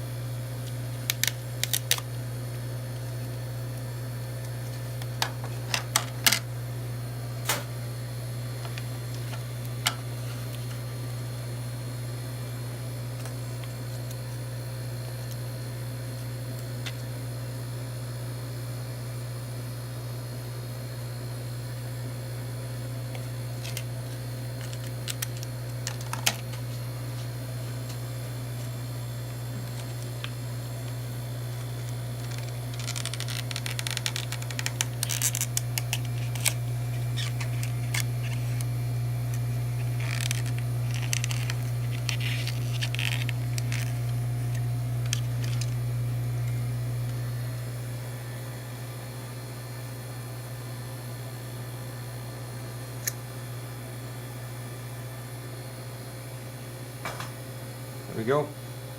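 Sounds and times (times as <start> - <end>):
steady low hum: 0.0 - 58.9.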